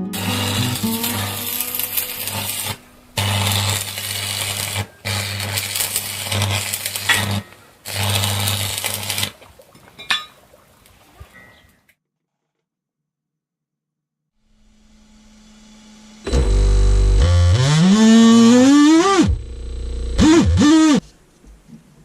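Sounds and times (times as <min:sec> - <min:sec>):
small electric motor buzzing: 0:00.2 - 0:09.3, 0:14.5 - 0:21.0.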